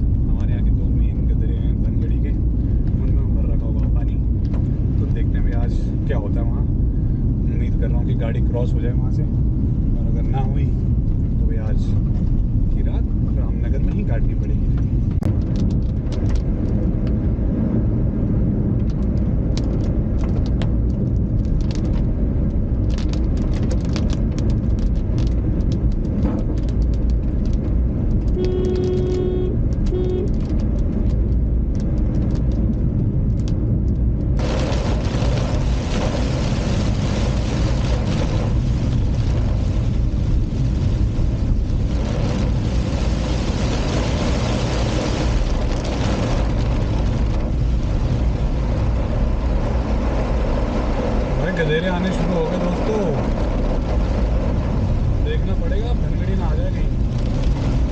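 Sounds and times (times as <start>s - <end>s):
car engine and road rumble: 0.0s - 57.9s
raindrop taps: 13.8s - 17.3s, 18.8s - 51.0s, 52.0s - 57.9s
car horn honking: 28.4s - 30.4s
hiss of rain and water spray: 34.4s - 51.1s.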